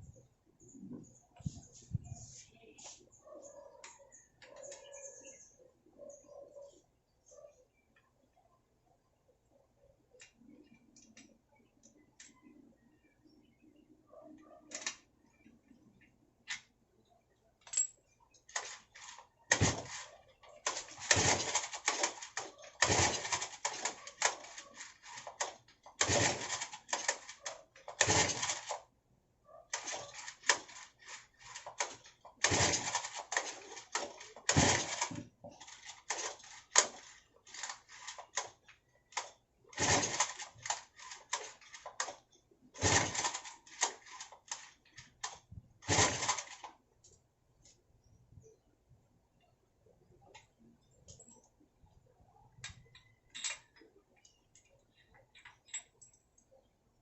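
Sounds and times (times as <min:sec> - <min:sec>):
recoil starter rattling: 0:20.6 - 0:28.8, 0:29.7 - 0:38.5, 0:39.7 - 0:42.2, 0:42.8 - 0:46.7.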